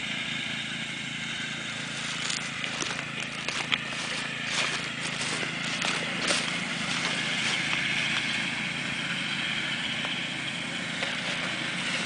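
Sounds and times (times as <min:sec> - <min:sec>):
ride-on miniature train running: 0:00.0 - 0:12.0.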